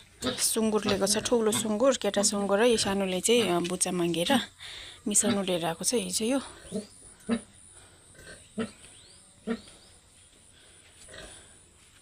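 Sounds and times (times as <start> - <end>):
pigs grunting: 0.0 - 3.7, 6.4 - 9.8, 11.1 - 11.6.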